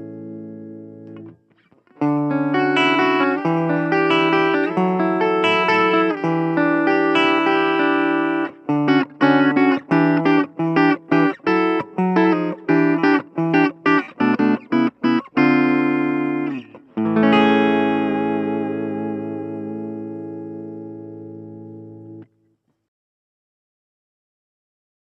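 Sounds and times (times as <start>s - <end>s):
clean electric guitar chords: 0.0s - 22.3s.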